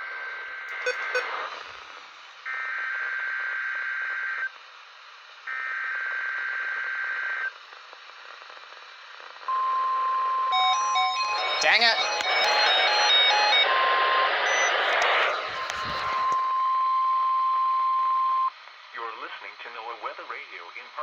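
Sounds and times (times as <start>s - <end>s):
steady alarm tone: 0.7s - 1.3s, 10.5s - 13.8s
digital data bursts: 0.7s - 1.4s, 11.3s - 13.6s.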